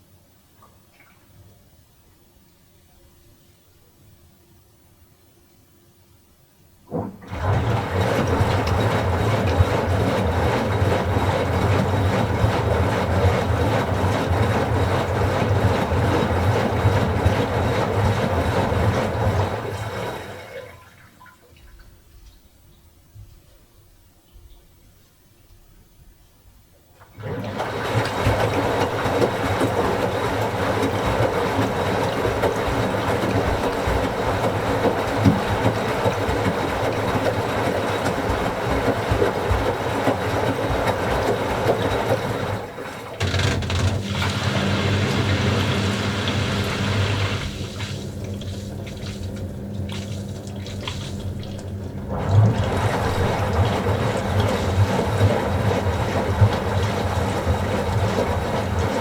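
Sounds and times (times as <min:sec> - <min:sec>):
washing machine low hum: 0:06.7 - 0:24.8, 0:26.4 - 0:59.0
washing machine water rushing: 0:06.9 - 0:21.8, 0:27.0 - 0:59.0.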